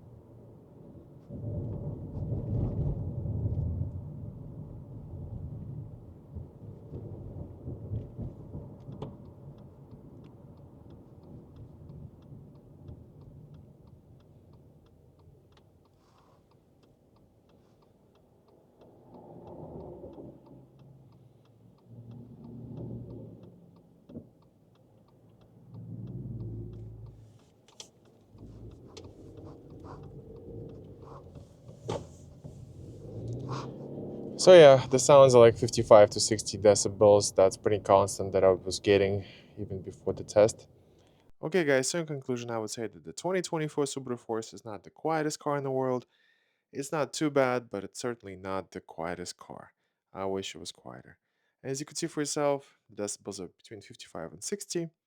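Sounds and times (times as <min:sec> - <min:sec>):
tyre and engine rumble: 0:00.0 - 0:41.4
faint light ticks: 0:06.4 - 0:33.6, 0:40.5 - 0:41.4.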